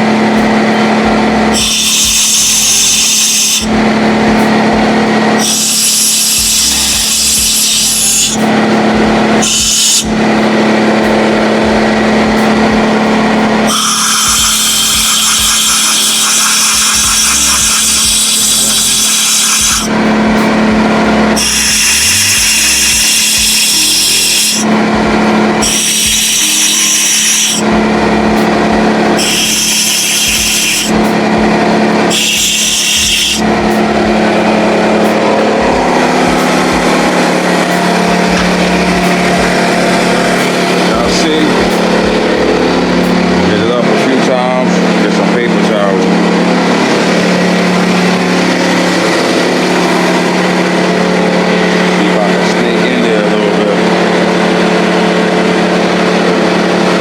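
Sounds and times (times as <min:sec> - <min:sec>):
air compressor motor humming: 0:00.0 - 0:57.0.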